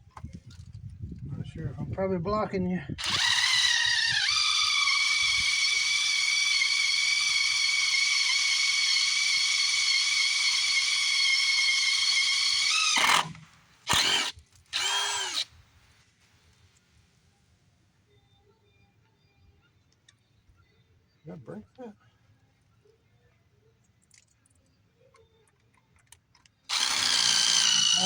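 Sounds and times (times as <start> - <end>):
electric drill running: 3.0 - 15.5, 26.7 - 28.0.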